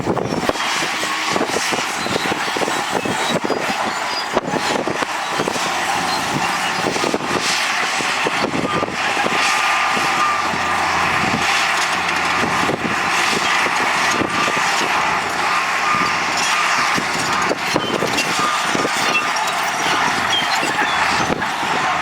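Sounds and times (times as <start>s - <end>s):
diesel machinery running: 0.0s - 22.0s
metallic clanks and knocks: 11.3s - 20.9s.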